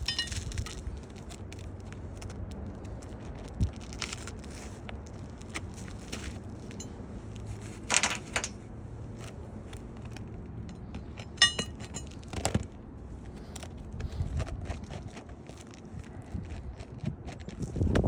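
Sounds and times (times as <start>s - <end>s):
ringing metallic clink: 0.0s - 0.4s, 11.4s - 12.1s
handling scrapes and knocks: 0.0s - 2.3s, 3.1s - 18.0s.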